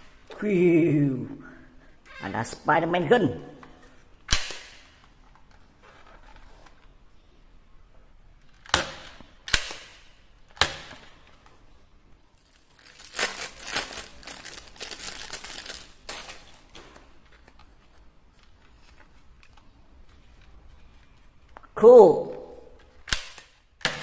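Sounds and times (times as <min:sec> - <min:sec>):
sharp plastic clicks: 0:04.3 - 0:05.1, 0:22.8 - 0:24.0
plastic packaging crinkling and tearing: 0:12.4 - 0:17.5.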